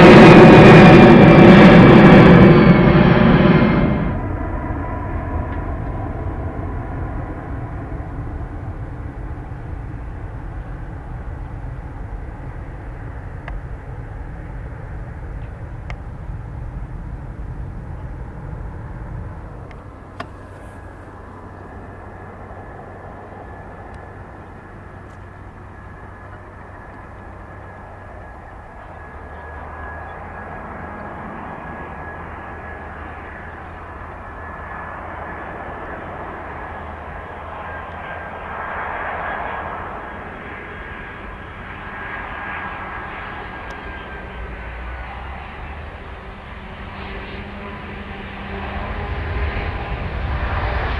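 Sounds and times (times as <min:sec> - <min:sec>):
jet engines rumbling: 0:00.0 - 0:50.9
thin high whine: 0:19.2 - 0:44.7.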